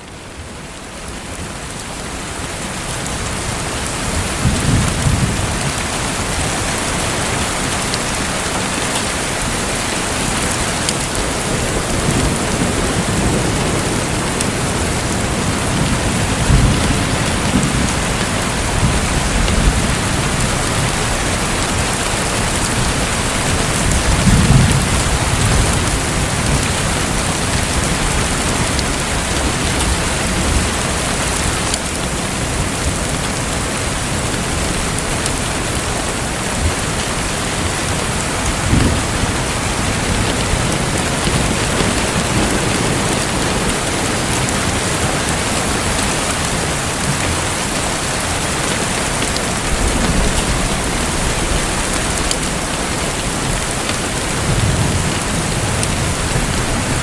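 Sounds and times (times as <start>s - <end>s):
heavy rain hissing: 1.9s - 57.0s
distant thunder rumbling: 9.0s - 32.2s, 36.5s - 57.0s.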